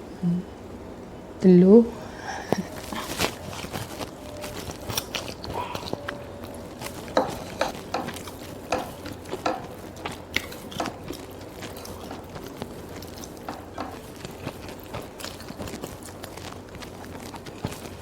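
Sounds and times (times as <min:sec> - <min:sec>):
crisp crunching and chewing: 0:02.6 - 0:18.0.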